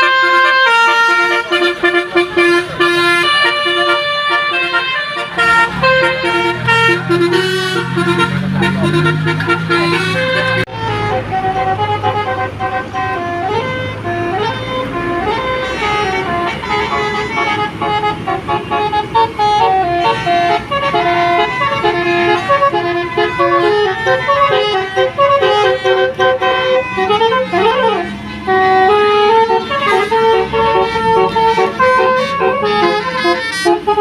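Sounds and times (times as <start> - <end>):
bus engine rumble: 0.0 - 34.0
bus horn playing a tune: 0.0 - 34.0.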